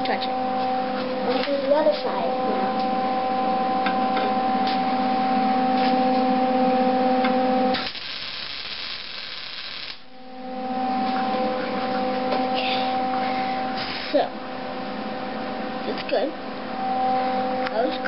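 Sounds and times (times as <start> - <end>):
welder electrical hum: 0.0 - 18.0
welder hissing: 7.8 - 10.1.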